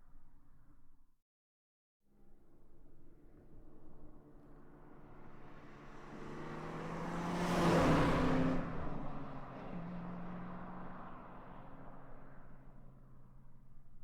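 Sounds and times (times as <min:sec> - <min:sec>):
car driving past: 0:04.4 - 0:13.4.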